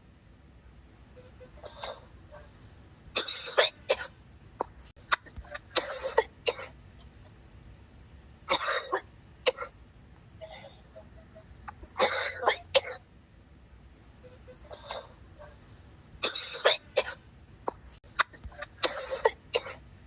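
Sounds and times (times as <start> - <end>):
person coughing hard: 1.4 - 2.2, 3.2 - 7.2, 8.5 - 9.7, 10.4 - 13.0, 14.5 - 15.5, 16.2 - 19.8.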